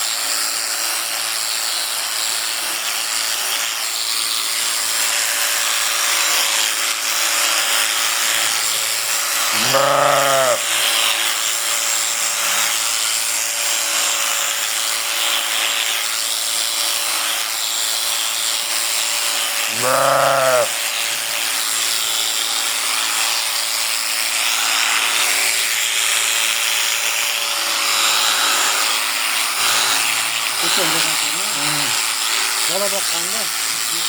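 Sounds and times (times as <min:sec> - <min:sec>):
electric sheep shears humming: 0:00.0 - 0:34.0
sheep bleating: 0:09.5 - 0:10.8, 0:19.7 - 0:21.4, 0:30.5 - 0:32.0.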